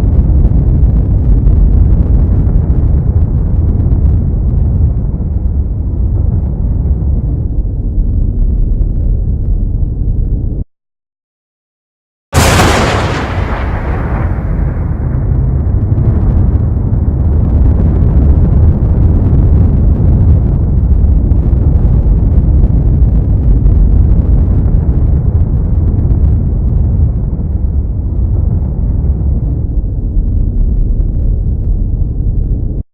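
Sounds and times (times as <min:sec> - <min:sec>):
thunder rumbling: 0:12.4 - 0:32.8.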